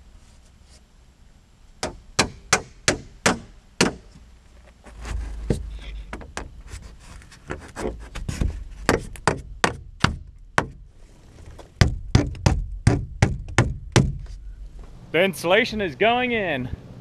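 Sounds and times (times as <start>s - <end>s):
hammer driving nails into wood: 11.8s - 14.4s.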